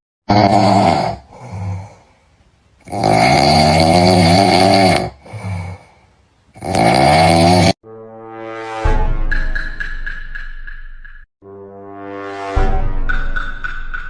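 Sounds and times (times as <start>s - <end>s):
loud rasping snores: 0.3s - 2.0s, 2.8s - 5.9s, 6.6s - 7.8s.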